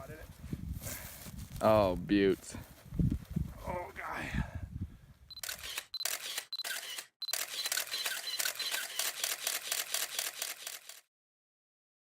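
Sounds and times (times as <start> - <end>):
rapid sharp clicks: 5.3 - 11.0.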